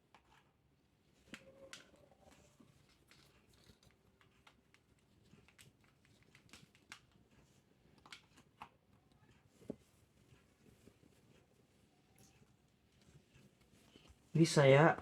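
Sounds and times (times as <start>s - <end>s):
rustles of small objects handled: 0.2s - 8.6s.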